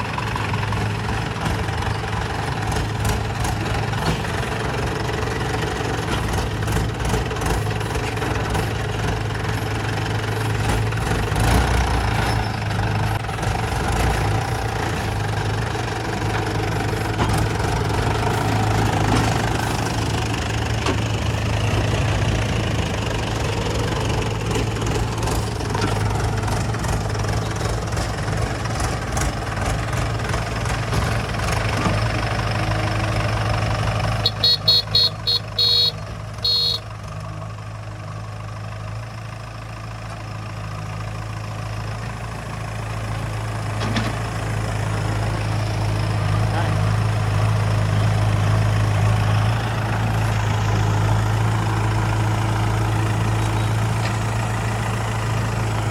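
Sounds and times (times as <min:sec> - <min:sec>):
diesel engines humming: 0:00.0 - 0:55.9.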